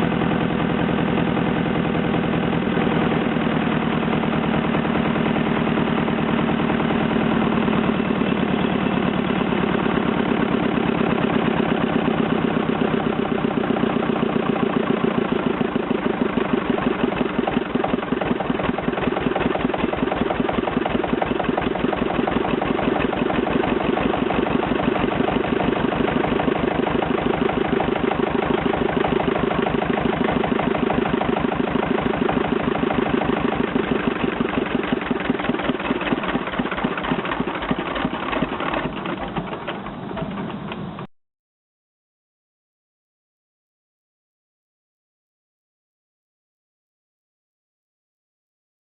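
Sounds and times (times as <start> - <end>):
diesel engine idling: 0.0 - 41.1.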